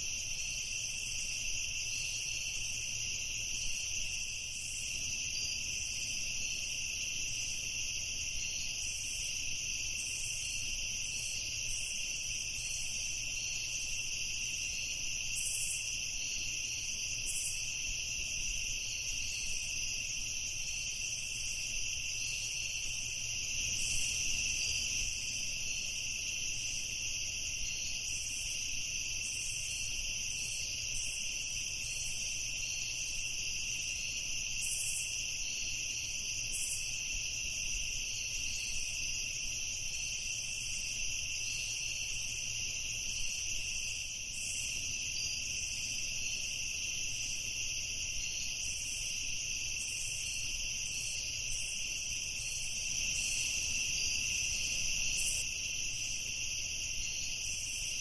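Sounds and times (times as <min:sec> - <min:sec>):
faint rapid insect pulsing: 0:00.0 - 0:58.0.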